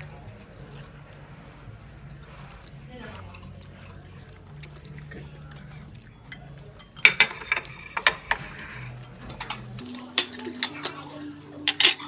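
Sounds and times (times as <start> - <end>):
soft background music: 0.0 - 12.0
utensils clicking against a bowl: 9.2 - 12.0.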